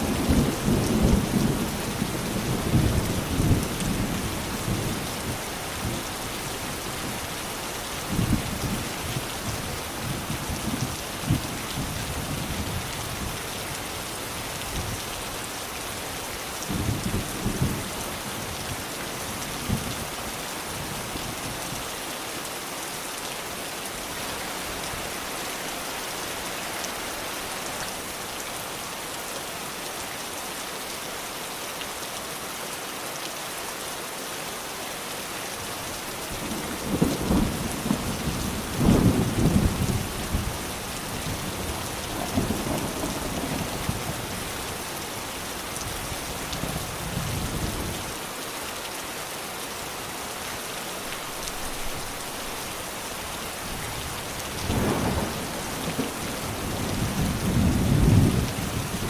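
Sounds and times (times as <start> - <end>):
steady rain hiss: 0.0 - 59.0
thunder rumbling: 54.6 - 59.0.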